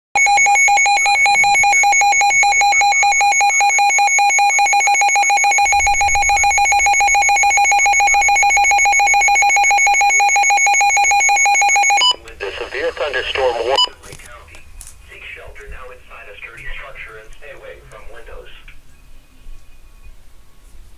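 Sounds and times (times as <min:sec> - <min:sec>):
rapid electronic alarm beeps: 0:00.2 - 0:12.2, 0:13.7 - 0:13.9.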